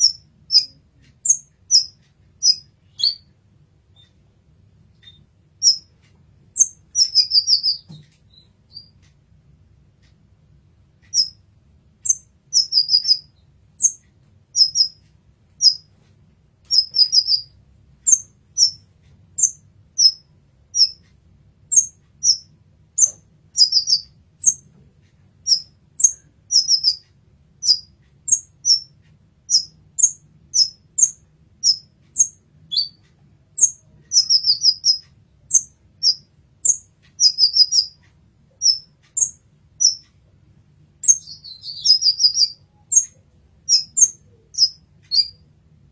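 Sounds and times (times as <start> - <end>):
sunbird chirping: 0.0 - 3.3, 5.0 - 5.9, 6.5 - 9.0, 11.1 - 11.4, 12.0 - 15.0, 15.6 - 15.9, 16.7 - 18.8, 19.4 - 21.0, 21.7 - 24.7, 25.4 - 27.0, 27.6 - 33.0, 33.6 - 40.1, 41.0 - 45.5.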